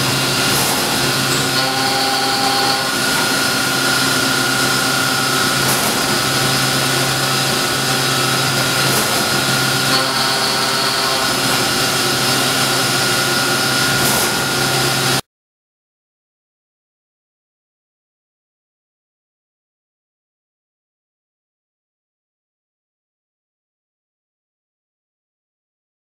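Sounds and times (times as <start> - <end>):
high machine whine: 0.0 - 15.2
machine hiss: 0.0 - 15.2
machine hum: 0.0 - 15.2.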